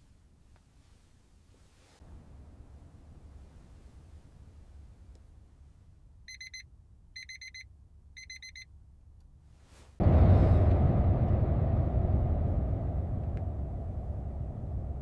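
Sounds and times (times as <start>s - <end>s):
digital alarm beeping: 6.3s - 6.6s, 7.2s - 8.7s.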